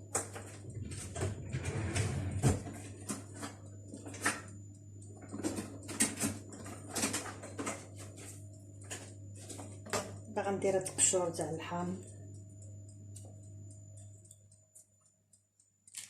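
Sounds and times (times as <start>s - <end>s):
low rumble: 0.6s - 2.9s.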